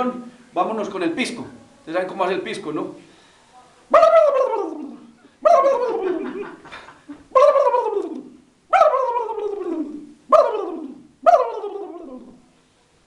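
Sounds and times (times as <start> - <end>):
man imitating turkey gobble: 3.9 - 6.6, 7.3 - 12.4.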